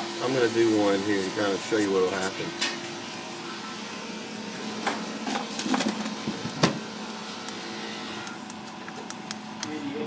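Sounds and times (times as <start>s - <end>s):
extractor fan humming: 0.0s - 10.0s.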